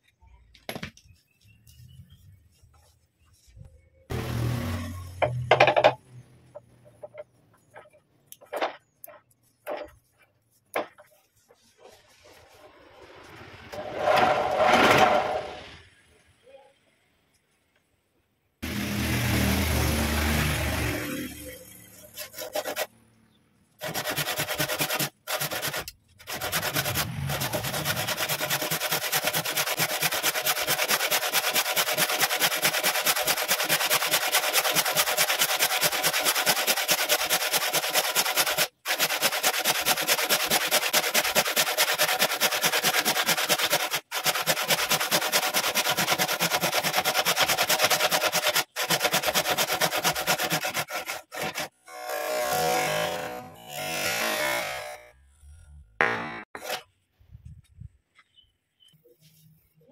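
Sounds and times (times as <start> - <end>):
tool rasping on lathe wood: 22.1 - 22.9, 23.8 - 51.8.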